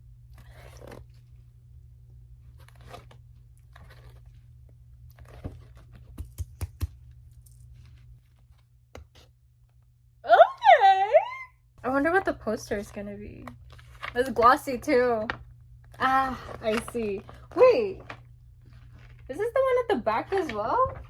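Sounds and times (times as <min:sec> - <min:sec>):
photobook pages turning: 0:00.3 - 0:01.4, 0:02.5 - 0:06.2, 0:07.6 - 0:09.3, 0:12.7 - 0:14.6, 0:16.0 - 0:19.3
soft paper rustles: 0:02.4 - 0:06.2, 0:15.2 - 0:19.4.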